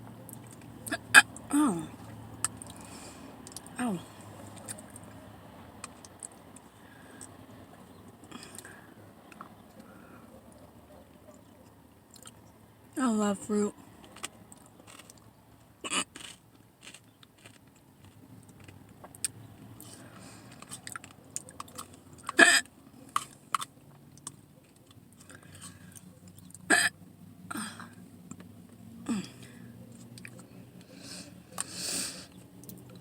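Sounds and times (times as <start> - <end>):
person hiccuping: 0.9 - 2.0, 15.8 - 16.2, 22.3 - 22.7, 26.7 - 27.9
chewing: 4.4 - 5.2, 8.3 - 12.5, 14.0 - 15.3, 15.9 - 26.7, 29.4 - 31.8.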